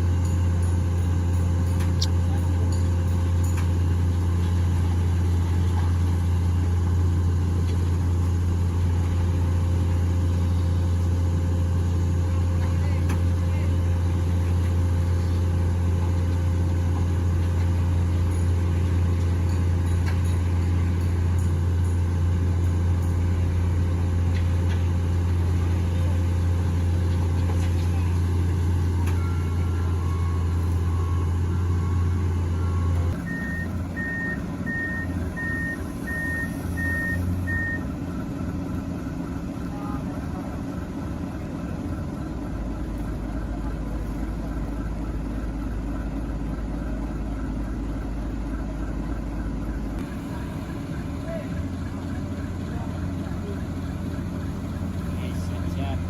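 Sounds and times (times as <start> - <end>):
diesel machinery engine drone: 0.0 - 56.0
backup alarm beeping: 28.9 - 38.0.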